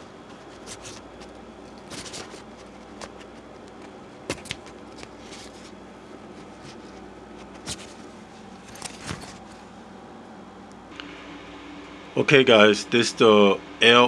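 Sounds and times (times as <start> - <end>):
nylon hamper rustling: 0.0 - 10.0
steady low hum: 0.0 - 14.0.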